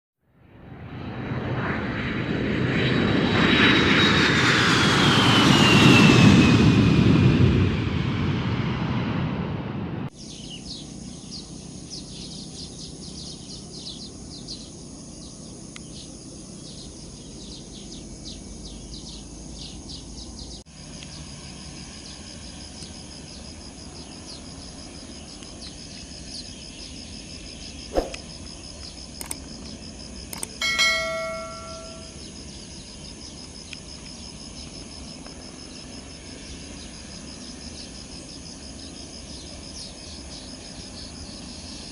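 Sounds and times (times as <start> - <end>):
aircraft engine: 0.2 - 41.9
sharp clicks: 29.2 - 29.5, 30.3 - 30.6
bird chirps: 30.4 - 32.4
bell-like ring: 30.6 - 32.2.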